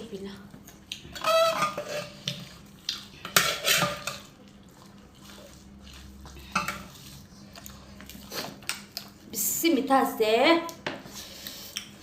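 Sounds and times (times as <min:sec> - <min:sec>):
utensil scraping a plate: 0:01.2 - 0:02.5, 0:03.3 - 0:04.3.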